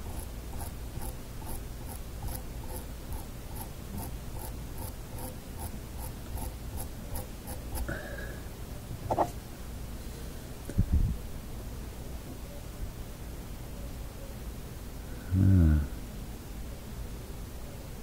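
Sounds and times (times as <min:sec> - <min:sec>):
faint even ticking: 0:00.0 - 0:07.9
steady low hum: 0:00.0 - 0:12.6.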